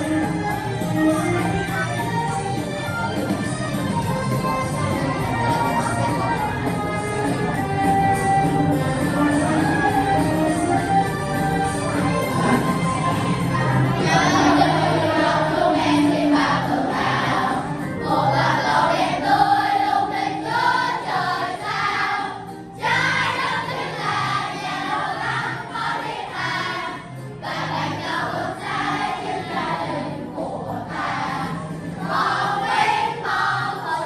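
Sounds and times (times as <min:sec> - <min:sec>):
children singing together: 0:11.8 - 0:34.0.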